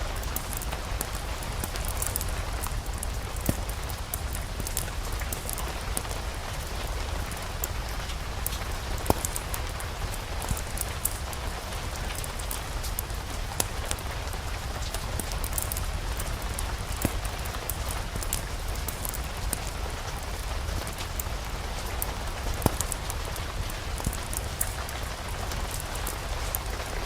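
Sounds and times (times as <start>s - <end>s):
fine crackles and sharp pops: 0.0s - 27.0s
steady rain: 0.0s - 27.0s.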